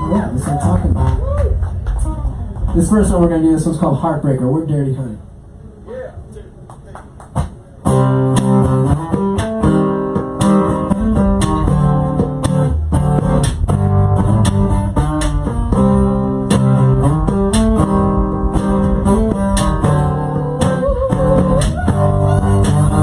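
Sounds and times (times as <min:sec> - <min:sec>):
bending guitar note: 0:07.9 - 0:23.0
rock band playing: 0:07.9 - 0:23.0.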